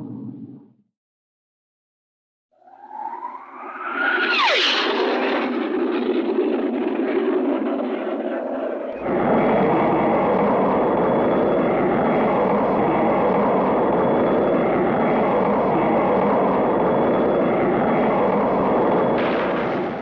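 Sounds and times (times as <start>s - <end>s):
cartoon rocket thruster burn: 9.0s - 20.0s.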